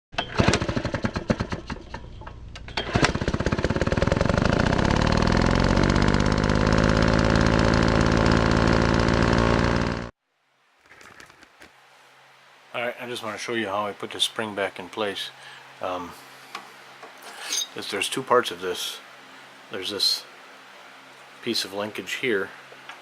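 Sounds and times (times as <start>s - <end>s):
small gasoline engine running: 0.2s - 2.1s, 2.7s - 10.1s.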